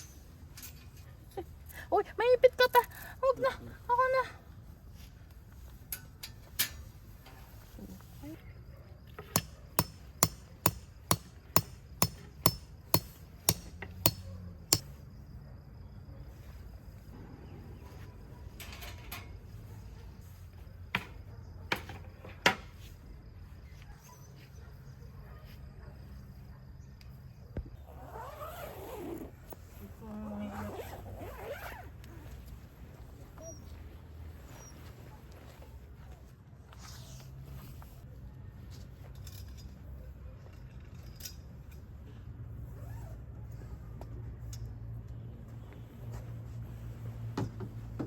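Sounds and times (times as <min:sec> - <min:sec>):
hammer striking tent stakes: 0:09.2 - 0:15.0.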